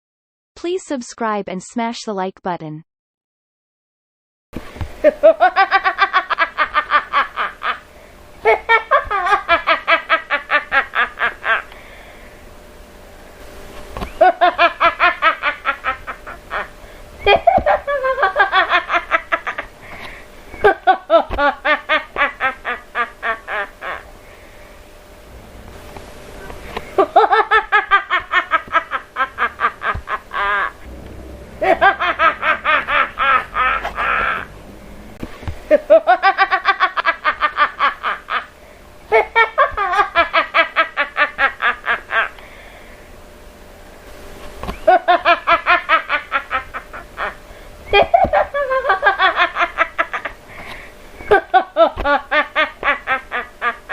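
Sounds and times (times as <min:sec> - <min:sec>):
woman cackling evil laugh: 0:05.0 - 0:07.8, 0:08.4 - 0:11.7, 0:14.1 - 0:19.7, 0:20.6 - 0:24.1, 0:27.0 - 0:30.9, 0:31.6 - 0:34.5, 0:35.7 - 0:38.5, 0:39.1 - 0:42.4, 0:44.8 - 0:50.4, 0:51.2 - 0:53.9.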